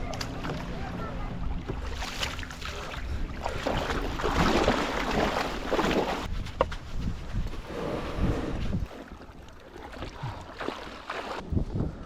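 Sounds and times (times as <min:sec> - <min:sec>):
water splashing around kayak: 0:00.1 - 0:06.7, 0:07.4 - 0:11.6
wind on microphone: 0:05.7 - 0:09.3, 0:11.3 - 0:12.0.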